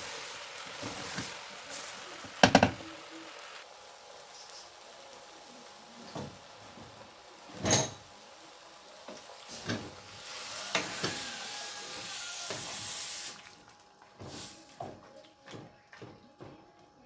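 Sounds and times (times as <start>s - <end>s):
pot sizzling: 0.0s - 14.6s
utensils knocking: 2.4s - 2.8s.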